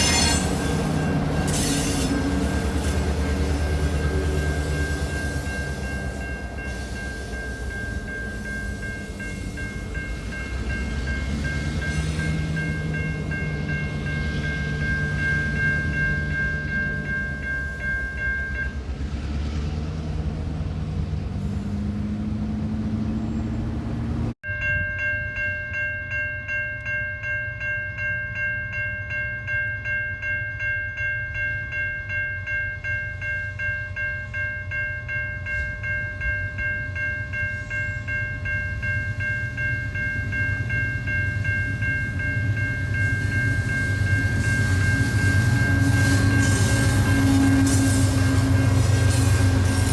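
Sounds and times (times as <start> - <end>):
train rumbling by: 0.0 - 24.4, 32.4 - 49.9
high-pitched ringing tones: 24.5 - 49.9.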